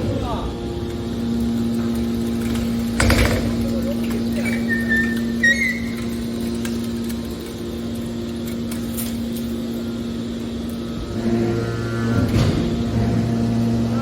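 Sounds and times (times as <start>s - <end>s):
deeper hum: 0.0s - 14.0s
hydraulic power unit humming: 0.0s - 14.0s
high squeal: 4.4s - 6.3s.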